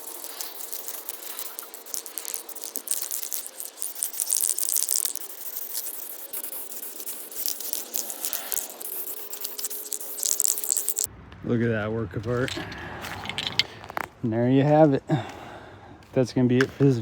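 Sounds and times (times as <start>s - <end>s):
spray can ball rattling: 0.0s - 11.1s
spray paint hissing: 0.0s - 11.1s.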